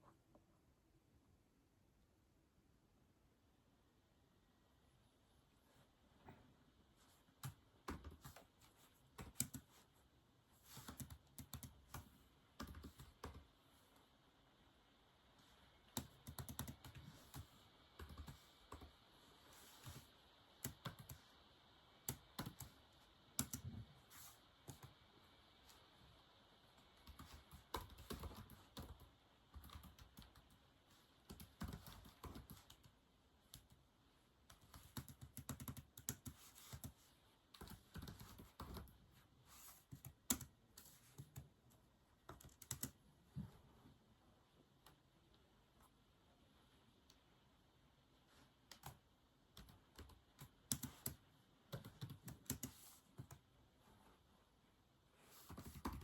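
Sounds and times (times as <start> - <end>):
typing on a keyboard: 7.4 - 8.5, 9.2 - 9.7, 10.7 - 13.5, 15.9 - 18.9, 20.6 - 21.2, 22.1 - 22.8, 23.4 - 23.7, 27.0 - 30.6, 31.3 - 32.9, 34.5 - 37.0, 37.6 - 38.9, 39.9 - 40.5, 42.3 - 43.0, 48.7 - 53.4, 55.5 - 56.0.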